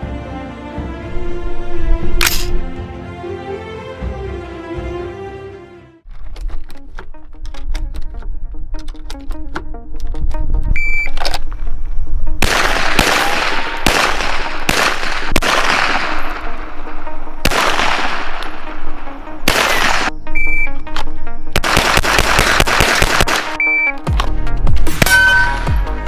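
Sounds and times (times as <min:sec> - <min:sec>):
background music: 0:00.0 - 0:26.0
gunshots with echo: 0:01.2 - 0:02.8, 0:12.4 - 0:20.3, 0:21.0 - 0:23.7.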